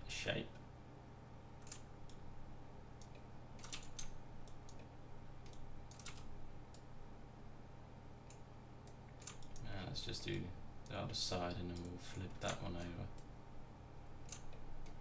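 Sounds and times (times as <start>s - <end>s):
steady low hum: 0.0s - 15.0s
keyboard and mouse clicks: 1.6s - 2.2s, 3.0s - 6.9s, 8.3s - 9.6s, 14.2s - 15.0s.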